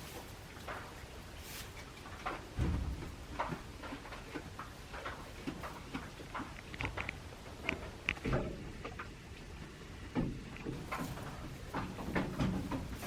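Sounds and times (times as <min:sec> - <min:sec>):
small clicks and rustles: 0:00.0 - 0:09.2
soft low thump: 0:02.6 - 0:03.1.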